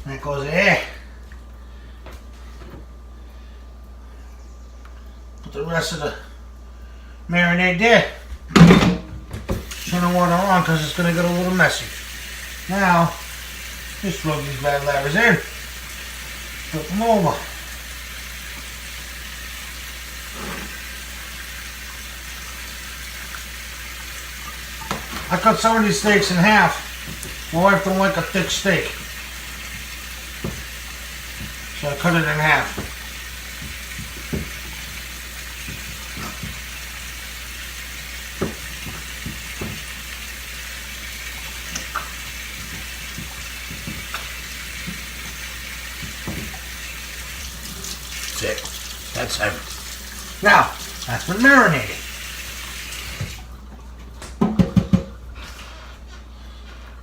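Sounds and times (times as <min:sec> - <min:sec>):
tap water running into sink: 0:09.4 - 0:55.3.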